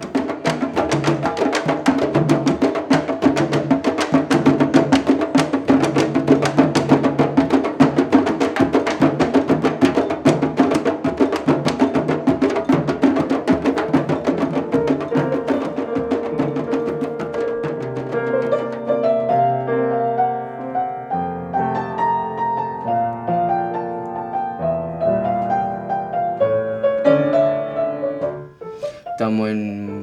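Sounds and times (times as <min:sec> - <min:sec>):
hand and stick drumming: 0:00.0 - 0:29.2
held note: 0:13.8 - 0:19.0.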